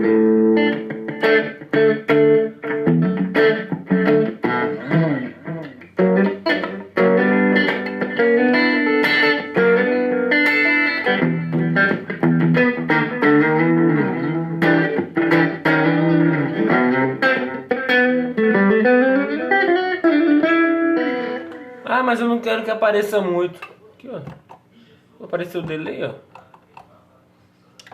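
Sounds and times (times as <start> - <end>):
electric guitar crunch chords: 0.0 - 21.8.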